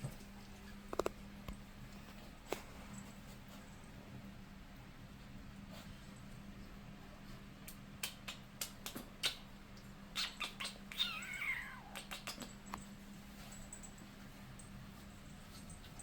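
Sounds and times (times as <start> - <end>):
pet's high-pitched cry: 10.2 - 12.6.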